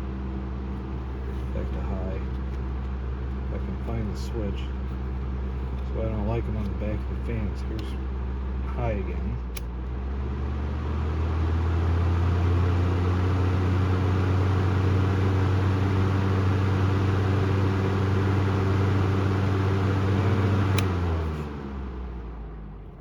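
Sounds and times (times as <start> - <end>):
table fan running: 0.0 - 21.9
fan switch click: 9.5 - 9.8, 20.4 - 21.1.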